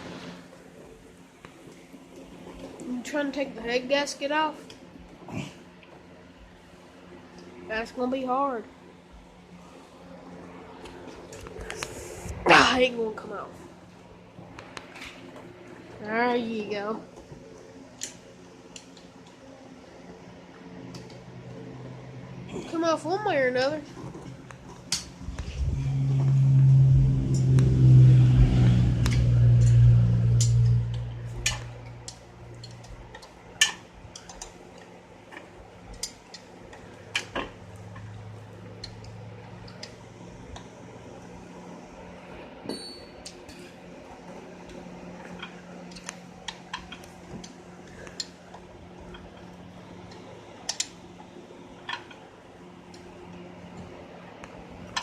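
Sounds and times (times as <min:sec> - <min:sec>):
faint steady hum: 0:00.0 - 0:55.0
loud low drone: 0:25.1 - 0:32.2.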